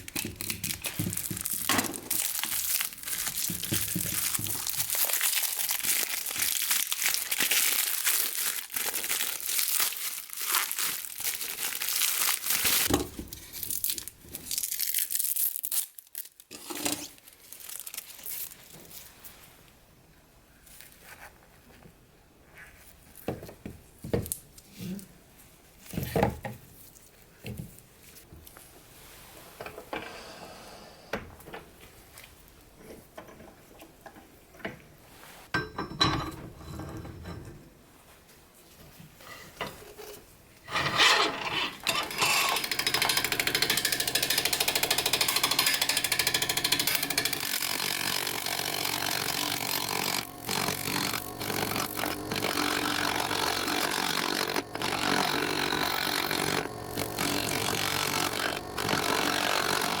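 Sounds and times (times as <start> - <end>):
tools and wood knocking: 39.4 - 60.0
power tool cutting wood: 40.7 - 60.0.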